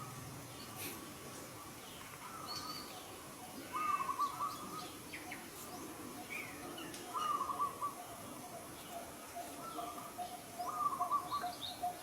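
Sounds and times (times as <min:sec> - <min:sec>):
outdoor background noise: 0:00.0 - 0:12.0
wavering bird call: 0:09.4 - 0:12.0.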